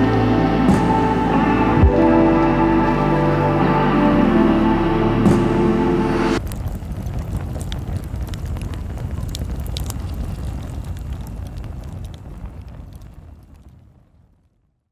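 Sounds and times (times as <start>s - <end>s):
low rumbling background: 0.0s - 6.4s
campfire crackling and popping: 6.4s - 14.2s.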